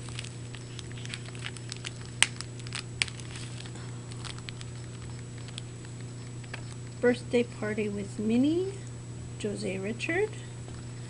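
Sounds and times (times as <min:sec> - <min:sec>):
plastic packets clicking and crinkling: 0:00.0 - 0:06.9
steady low hum: 0:00.0 - 0:11.0.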